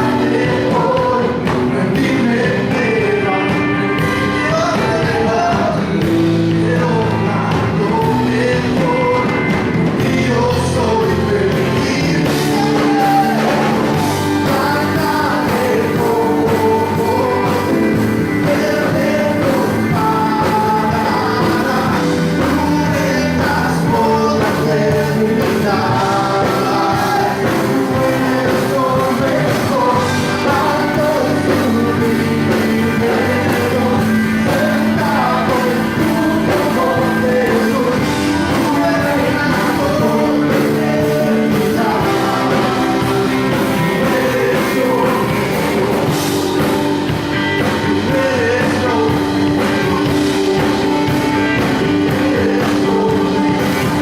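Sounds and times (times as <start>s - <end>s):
band accompaniment: 0.0s - 54.0s
person singing worship song: 0.0s - 54.0s.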